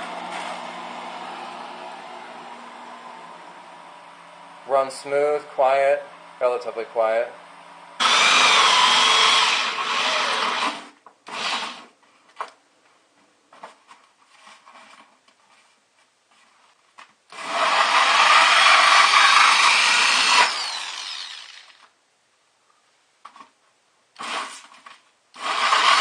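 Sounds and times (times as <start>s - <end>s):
power drill cutting: 8.0s - 11.9s, 17.3s - 21.9s, 24.2s - 24.7s, 25.4s - 26.0s.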